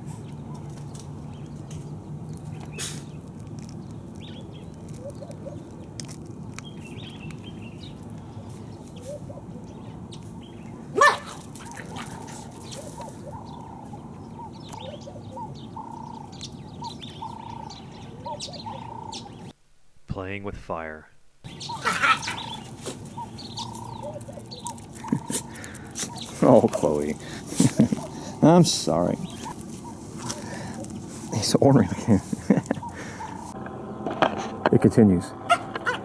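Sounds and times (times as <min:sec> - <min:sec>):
dog barking: 0:10.9 - 0:15.5, 0:21.7 - 0:26.4, 0:27.8 - 0:28.3, 0:29.4 - 0:30.5, 0:32.8 - 0:33.5, 0:35.5 - 0:36.0.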